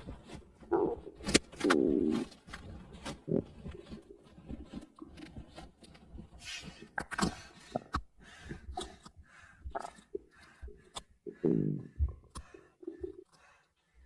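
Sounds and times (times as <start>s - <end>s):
stomach growling and gurgling: 0.0s - 13.4s.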